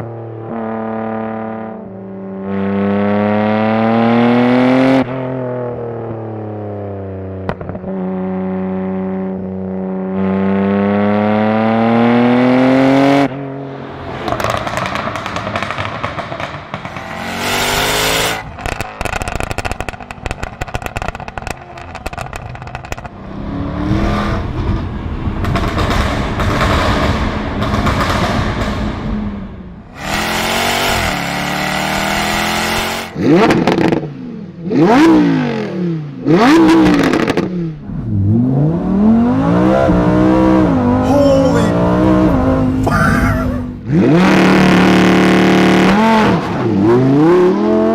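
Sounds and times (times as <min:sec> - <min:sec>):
car engine revving: 0:10.2 - 0:20.4, 0:30.0 - 0:34.1, 0:41.7 - 0:47.9.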